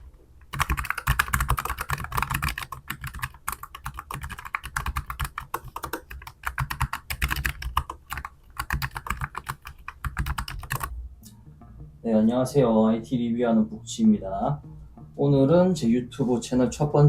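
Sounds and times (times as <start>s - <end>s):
fast mechanical keyboard typing: 0.5s - 10.9s.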